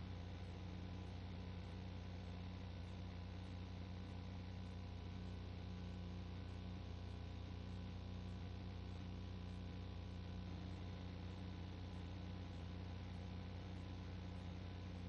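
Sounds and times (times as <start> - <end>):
steady low hum: 6.5 - 15.0.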